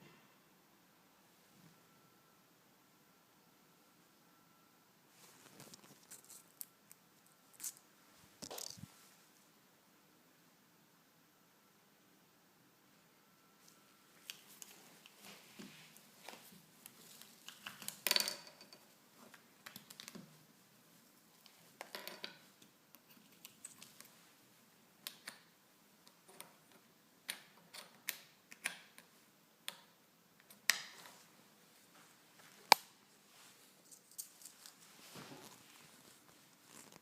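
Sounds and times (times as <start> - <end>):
rustling of small parts: 5.2 - 9.2, 13.6 - 24.4, 30.9 - 37.0
small parts clicking and tapping: 16.2 - 20.3.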